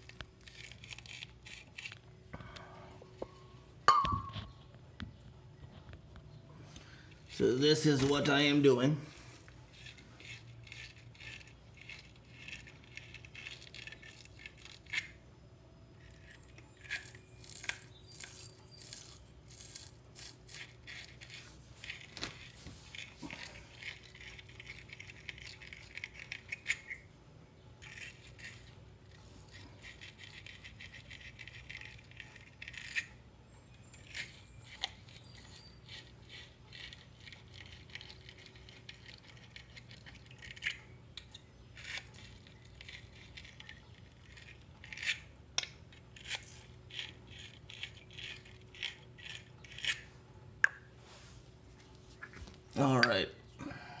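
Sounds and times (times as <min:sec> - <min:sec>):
steady low hum: 0:00.0 - 0:54.0
metal tools scratching and rattling: 0:16.0 - 0:27.1, 0:27.8 - 0:45.3.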